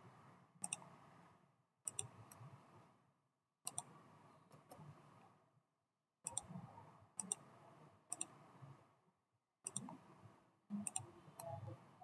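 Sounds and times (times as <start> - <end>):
computer mouse clicking: 0.6 - 0.9, 1.8 - 2.4, 3.6 - 4.9, 6.2 - 6.5, 7.2 - 7.5, 8.1 - 8.4, 9.6 - 10.0, 10.8 - 11.6.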